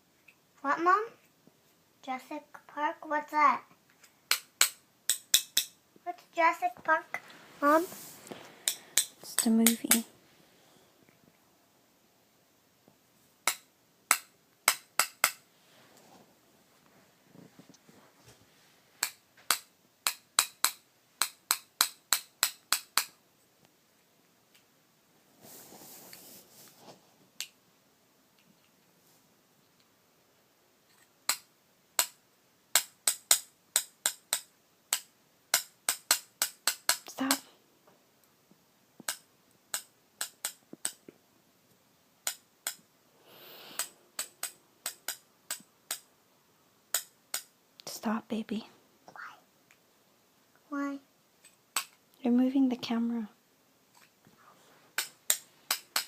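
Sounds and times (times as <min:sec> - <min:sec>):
short rustle: 0:07.1 - 0:08.6, 0:25.3 - 0:27.2
sharp clicks: 0:43.8 - 0:46.1, 0:55.0 - 0:56.0.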